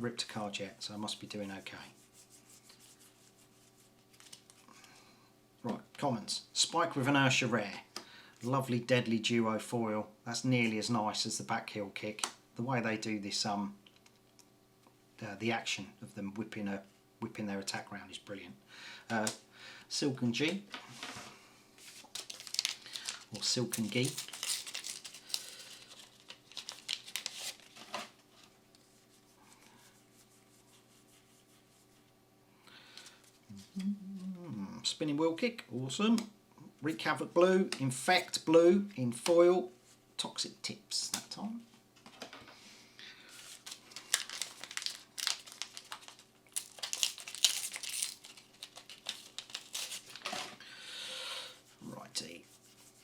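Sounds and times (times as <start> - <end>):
trading cards rustling: 4.0 - 4.6, 21.8 - 28.1, 43.3 - 50.5
foil wrapper crinkling and tearing: 21.8 - 28.0, 43.3 - 50.5.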